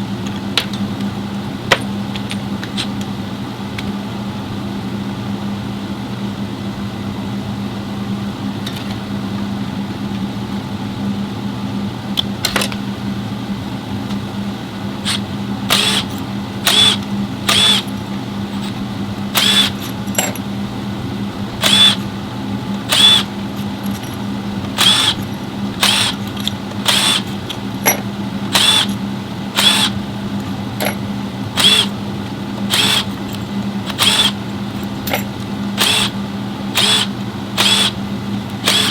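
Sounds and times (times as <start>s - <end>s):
steady low hum: 0.0s - 38.9s
power tool short bursts: 15.1s - 17.9s, 19.4s - 19.8s, 21.6s - 22.0s, 22.9s - 23.3s, 24.8s - 25.2s, 25.8s - 26.2s, 26.8s - 27.3s, 28.5s - 28.9s, 29.6s - 30.0s, 31.6s - 31.9s, 32.7s - 33.1s, 33.9s - 34.4s, 35.8s - 36.2s, 36.8s - 38.0s, 38.6s - 38.9s.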